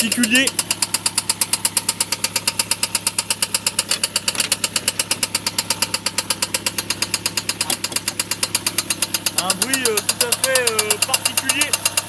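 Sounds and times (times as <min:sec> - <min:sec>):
car engine running: 0:00.0 - 0:12.0
loud regular engine knocking: 0:00.0 - 0:12.0.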